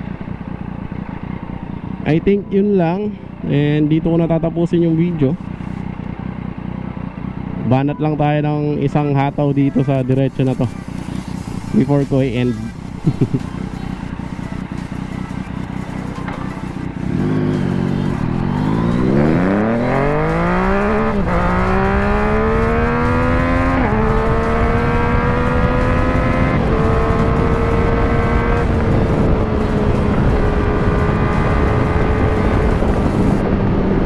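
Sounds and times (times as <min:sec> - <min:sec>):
motorcycle engine revving hard: 0:16.7 - 0:34.0.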